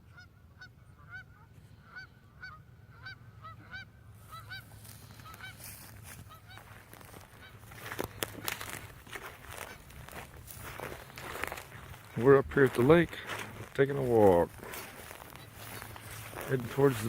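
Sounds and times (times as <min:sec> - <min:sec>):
gulls calling: 0:01.0 - 0:17.0
rustling near microphone: 0:04.2 - 0:17.0.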